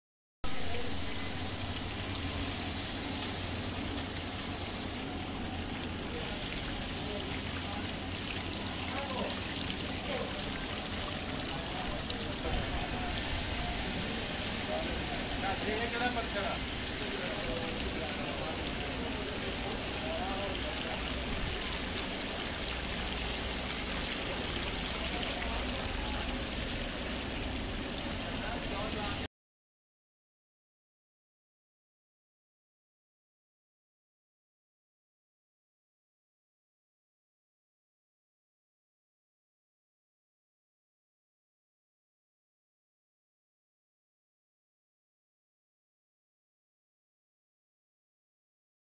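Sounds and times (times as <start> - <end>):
fountain water trickling: 0.5 - 29.3.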